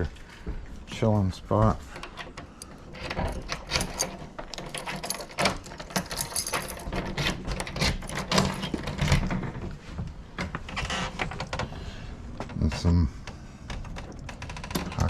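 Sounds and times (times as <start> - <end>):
metallic clicking and rattling: 1.7 - 9.6.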